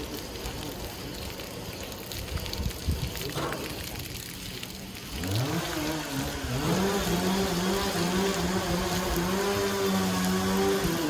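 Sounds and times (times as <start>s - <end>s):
sawmill motor speeding up: 5.2s - 11.0s.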